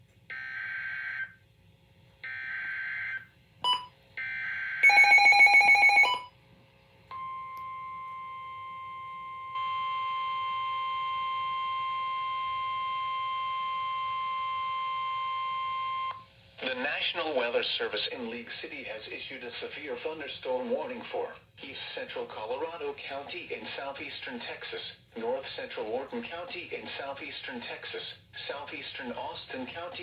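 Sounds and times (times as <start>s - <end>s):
steady warning alarm tone: 0.3s - 1.4s, 2.2s - 6.3s, 7.1s - 16.2s.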